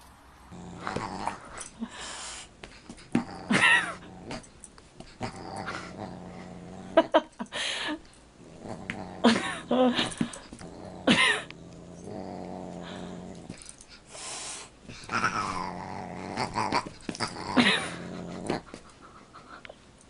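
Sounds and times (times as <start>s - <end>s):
animal growling low: 0.5s - 1.7s, 5.2s - 7.2s, 8.4s - 13.6s, 15.0s - 18.8s.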